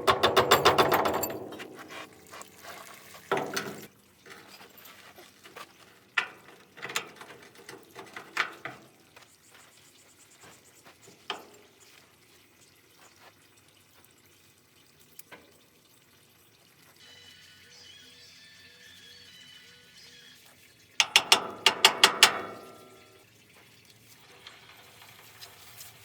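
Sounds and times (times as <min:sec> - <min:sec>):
hand tools and metal parts clinking: 0:00.0 - 0:09.6, 0:10.4 - 0:12.1, 0:21.0 - 0:23.2, 0:23.9 - 0:26.0.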